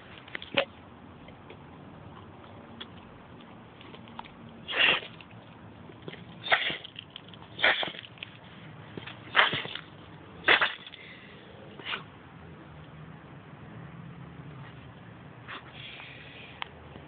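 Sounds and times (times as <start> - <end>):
dog sneezing: 4.7 - 5.2, 6.4 - 6.9, 7.6 - 8.1, 9.3 - 9.8, 10.4 - 11.0, 11.8 - 12.1.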